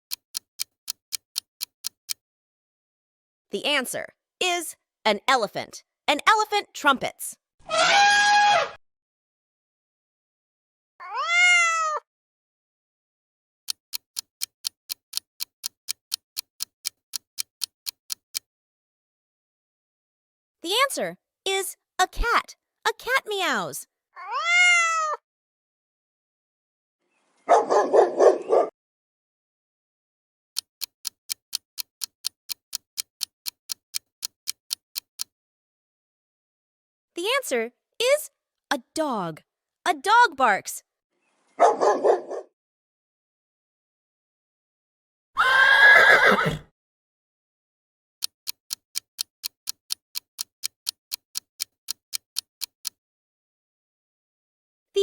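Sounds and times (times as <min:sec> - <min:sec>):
clock-like ticking: 0:00.1 - 0:02.2, 0:13.7 - 0:18.5, 0:30.6 - 0:35.3, 0:48.2 - 0:53.0
cat meowing: 0:11.0 - 0:12.0, 0:24.2 - 0:25.2
dog barking: 0:27.5 - 0:28.8, 0:41.6 - 0:42.5
horse neighing: 0:45.4 - 0:46.7.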